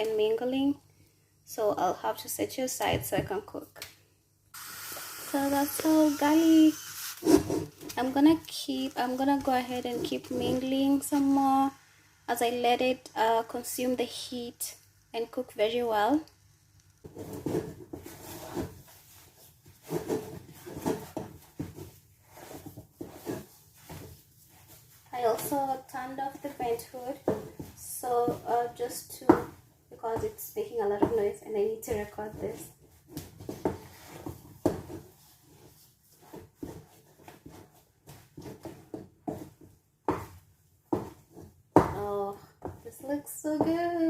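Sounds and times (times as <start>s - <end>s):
spoon scraping dough in pot: 5.4s - 12.0s.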